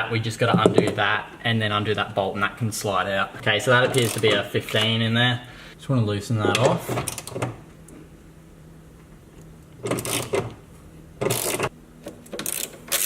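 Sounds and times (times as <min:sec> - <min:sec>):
ratchet wrench clicking: 0:09.9 - 0:10.4, 0:11.2 - 0:11.7, 0:12.4 - 0:13.0.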